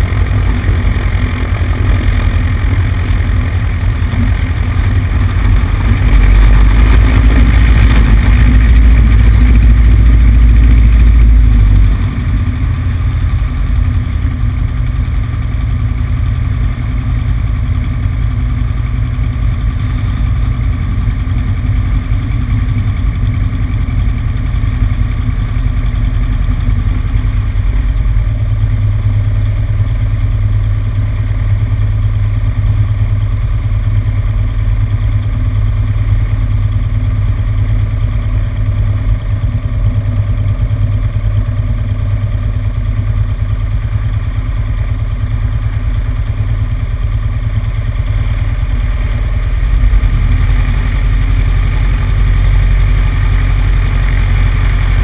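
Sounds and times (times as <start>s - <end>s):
propeller plane engine running: 0.0s - 55.0s.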